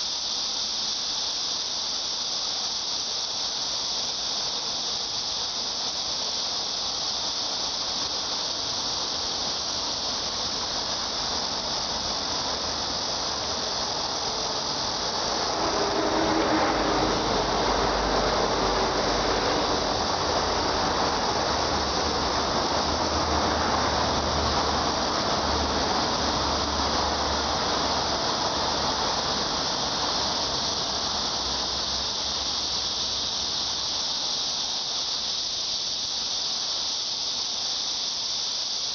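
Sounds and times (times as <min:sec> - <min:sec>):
cicadas chorus: 0:00.0 - 0:38.9.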